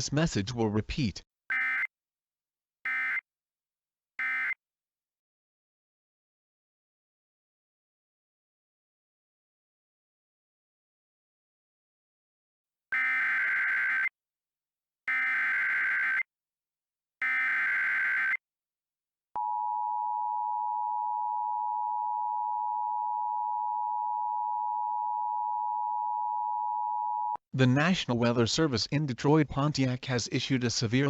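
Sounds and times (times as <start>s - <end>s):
buzzy digital data tones: 13.0s - 14.1s, 15.1s - 16.2s, 17.2s - 18.4s.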